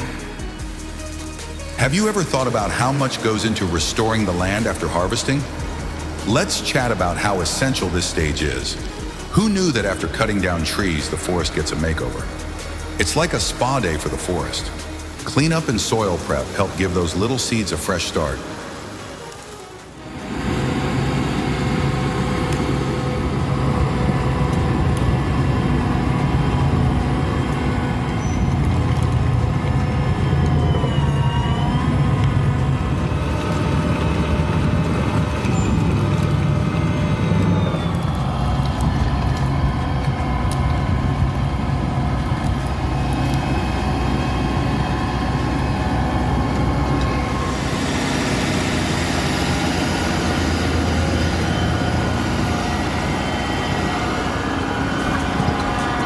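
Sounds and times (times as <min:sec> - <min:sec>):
diesel machinery running under load: 0:00.0 - 0:56.0.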